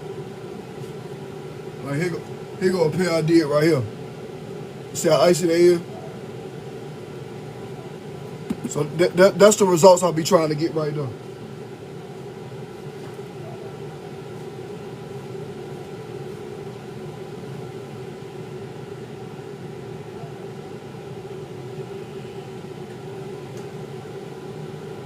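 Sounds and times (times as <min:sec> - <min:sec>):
machine hum: 0:00.0 - 0:25.0.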